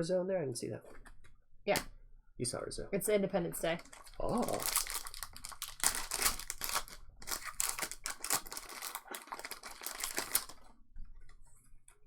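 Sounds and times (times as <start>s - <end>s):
cards clicking and wrappers crinkling: 3.8s - 10.7s.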